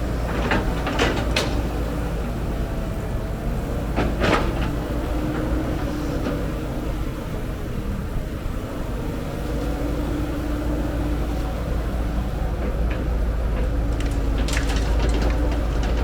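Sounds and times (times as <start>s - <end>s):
heavy diesel machine engine rumbling: 0.0s - 16.0s
metallic clanks: 13.6s - 16.0s.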